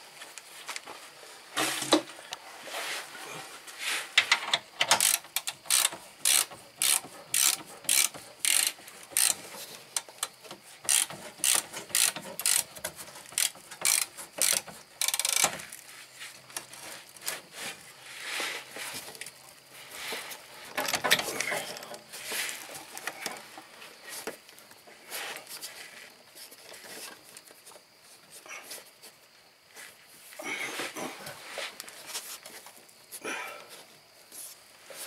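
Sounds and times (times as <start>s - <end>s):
socket ratchet clicking: 4.6s - 9.4s, 10.0s - 15.6s.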